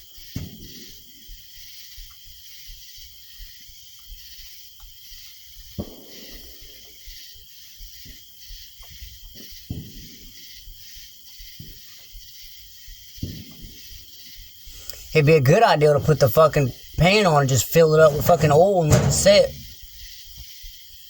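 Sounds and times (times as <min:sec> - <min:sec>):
dull knocks and clunks: 0:15.0 - 0:19.7.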